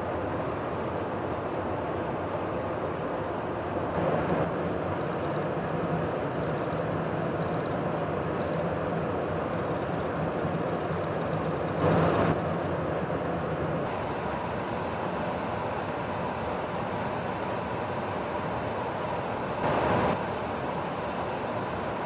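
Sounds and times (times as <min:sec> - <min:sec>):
jet engine roar: 0:00.0 - 0:04.6, 0:11.8 - 0:12.4, 0:13.8 - 0:22.0.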